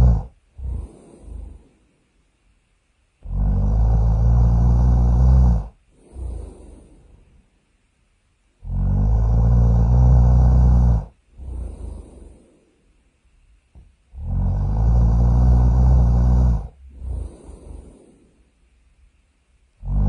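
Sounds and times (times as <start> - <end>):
cartoon character snoring: 0.0 - 1.7, 3.2 - 7.0, 8.6 - 12.5, 14.1 - 18.3, 19.8 - 20.0.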